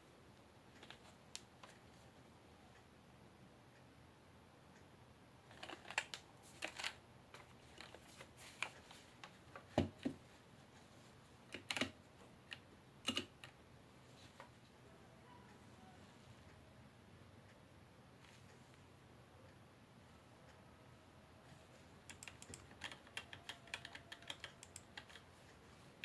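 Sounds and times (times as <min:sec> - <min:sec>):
mechanical keyboard key clacks: 0:22.1 - 0:25.2.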